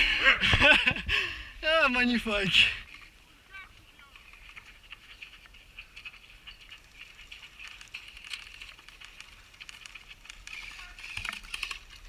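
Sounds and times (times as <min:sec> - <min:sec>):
rustling: 0:02.6 - 0:12.0.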